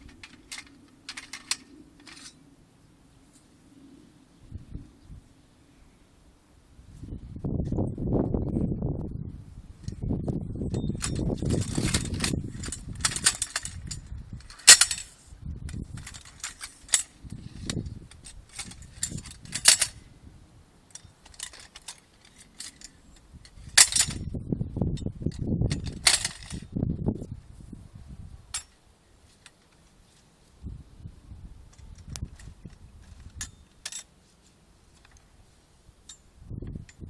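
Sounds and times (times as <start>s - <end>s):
clicks and knocks of handling: 0.0s - 2.4s, 11.0s - 15.1s, 15.7s - 20.0s, 20.9s - 23.2s, 23.8s - 24.2s, 25.7s - 26.6s, 34.9s - 35.3s
sharp metal clanks: 0.0s - 2.4s, 10.7s - 15.2s, 15.9s - 20.0s, 23.8s - 24.2s, 25.7s - 26.6s.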